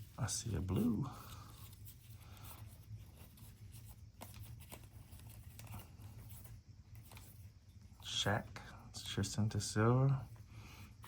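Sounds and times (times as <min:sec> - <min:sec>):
low room hum: 0:00.0 - 0:11.0
cards clicking and rustling: 0:03.2 - 0:06.3.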